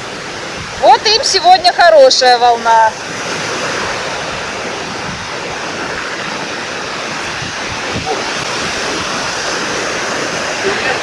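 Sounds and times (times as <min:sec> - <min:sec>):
surf breaking on shore: 0:00.0 - 0:11.0.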